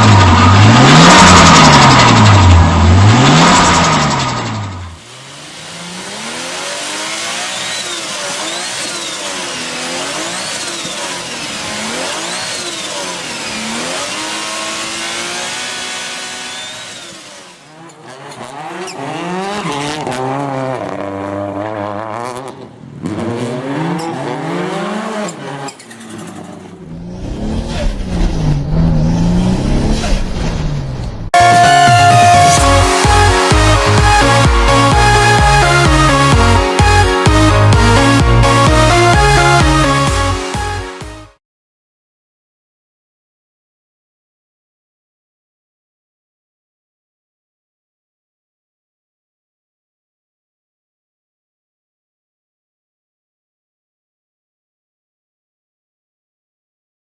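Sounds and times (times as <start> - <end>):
car engines revving: 0.0 - 40.8.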